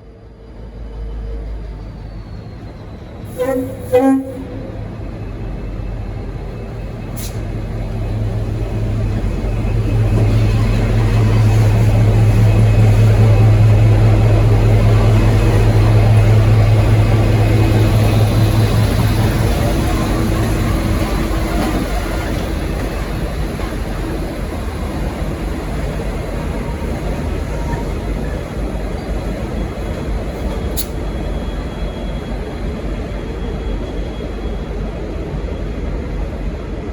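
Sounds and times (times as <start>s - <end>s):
diesel locomotive engine running: 0.1s - 36.9s
short click: 30.7s - 31.0s.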